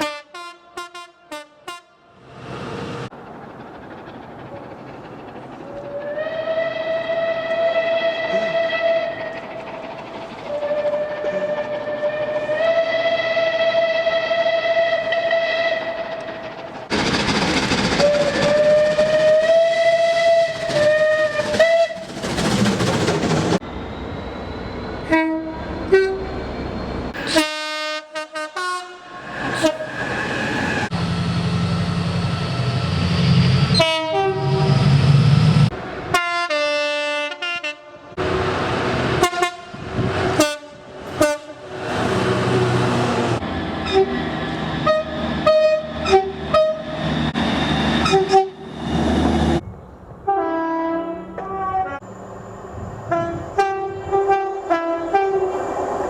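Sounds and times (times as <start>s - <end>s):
train horn blasts: 0.0s - 2.2s, 6.1s - 9.3s, 10.5s - 16.1s, 18.1s - 22.0s, 25.0s - 26.3s, 27.2s - 29.8s, 33.7s - 34.7s, 36.1s - 38.2s, 39.2s - 41.7s, 43.8s - 44.2s, 44.8s - 47.0s, 48.0s - 48.6s, 50.2s - 52.0s, 53.1s - 55.6s
train rumble and wheel clatter: 0.9s - 56.0s.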